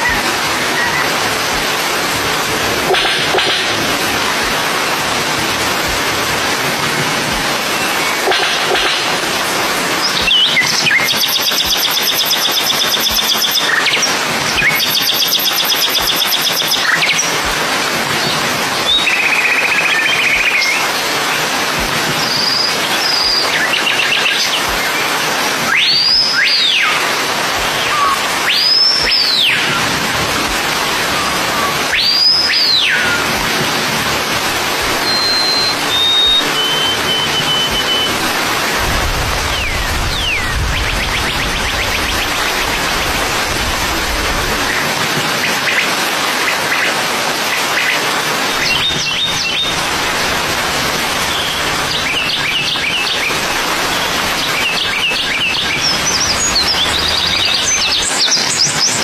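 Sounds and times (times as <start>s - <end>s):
rain hissing: 0.0s - 59.0s
birds chirping: 51.2s - 59.0s.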